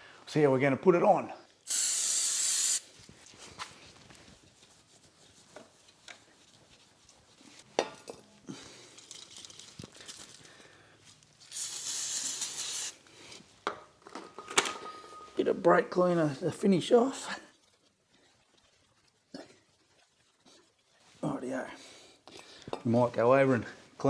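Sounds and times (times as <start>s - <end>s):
spray can hiss: 1.7s - 2.9s, 11.5s - 13.0s.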